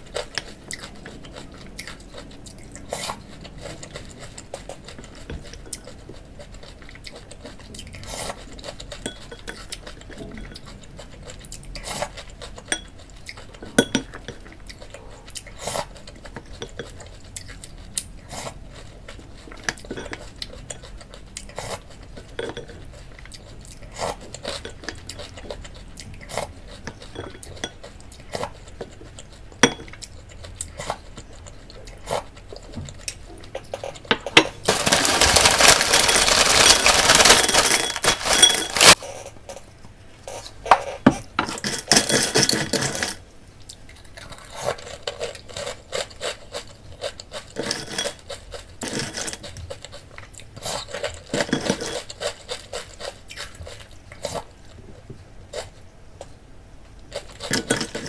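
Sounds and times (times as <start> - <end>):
spoon scraping cereal bowl: 33.6 - 39.3.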